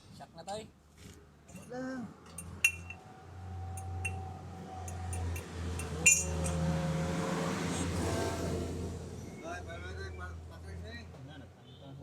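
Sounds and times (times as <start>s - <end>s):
tools clinking on metal: 2.3s - 3.1s, 3.8s - 6.7s.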